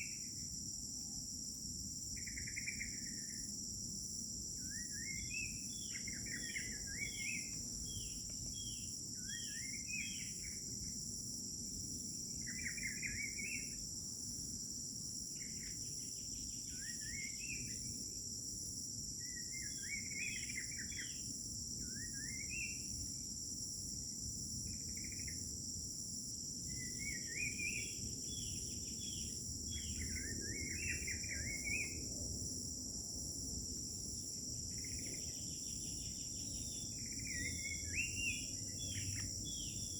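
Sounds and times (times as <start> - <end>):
crickets chirring: 0.0 - 39.9.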